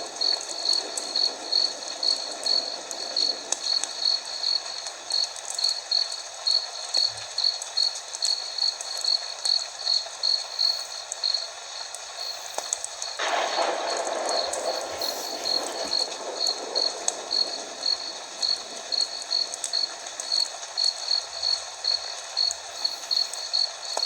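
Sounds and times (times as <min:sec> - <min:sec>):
rushing noise: 0:00.0 - 0:05.1, 0:13.2 - 0:20.5
cricket chirping: 0:00.0 - 0:24.0
fire crackling: 0:00.0 - 0:24.0.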